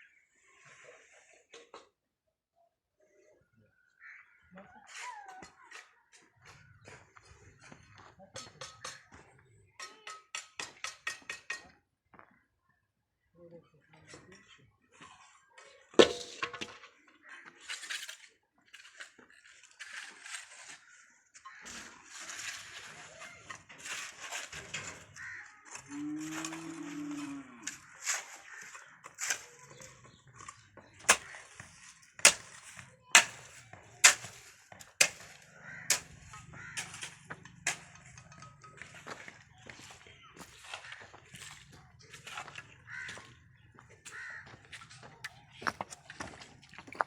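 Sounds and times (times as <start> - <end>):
sharp metallic clank: 16.0 - 16.8
scraping noises: 16.0 - 17.0, 21.6 - 47.0.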